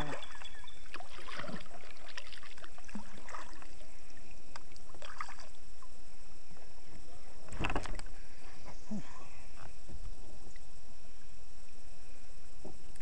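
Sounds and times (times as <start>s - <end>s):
kayak knocks and splashes: 0.0s - 3.7s, 7.5s - 8.1s
running water: 0.0s - 8.6s.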